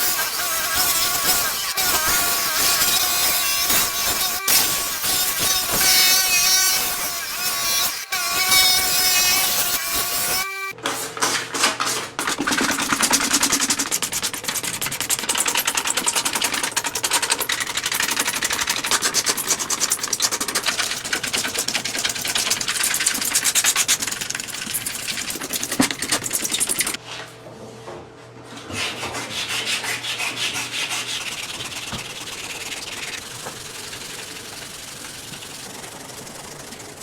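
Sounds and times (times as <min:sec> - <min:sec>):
sandpaper rubbing on plastic: 0:12.4 - 0:27.0, 0:28.7 - 0:37.0.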